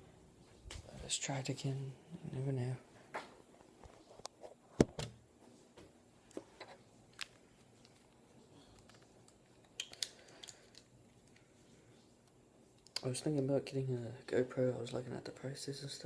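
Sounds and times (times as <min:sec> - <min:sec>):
small objects clicking and knocking: 0:08.7 - 0:11.4.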